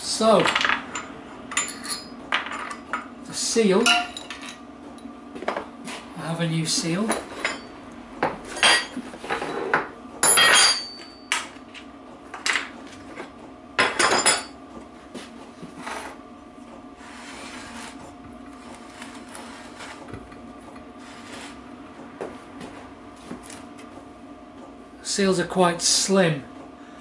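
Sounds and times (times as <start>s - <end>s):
metal tools clinking on workbench: 0.4s - 2.8s, 10.2s - 11.5s.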